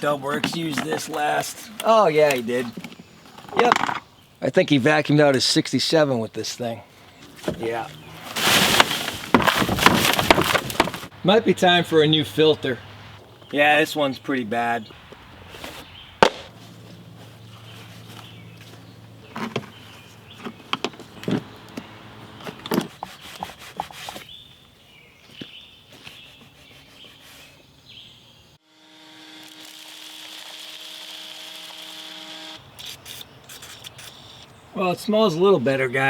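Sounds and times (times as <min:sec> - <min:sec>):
knocks and clatter of handling: 0:02.6 - 0:04.1, 0:07.2 - 0:11.1, 0:18.2 - 0:21.5.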